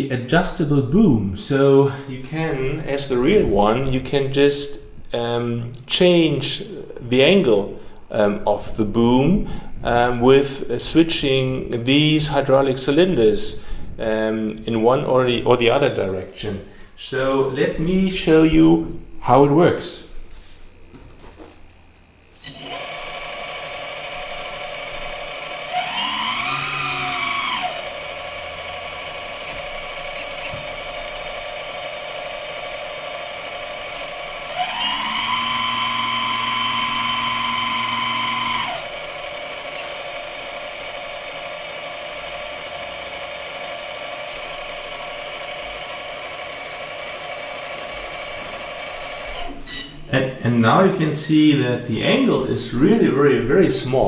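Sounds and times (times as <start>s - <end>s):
hydraulic pump whining: 22.3s - 50.1s.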